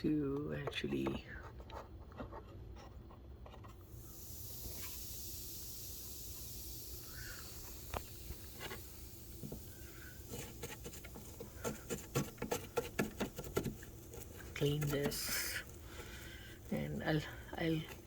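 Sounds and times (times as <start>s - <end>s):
vinegar fizzing on baking soda: 3.8s - 12.9s, 13.8s - 18.0s
toothbrush scrubbing: 10.3s - 16.2s.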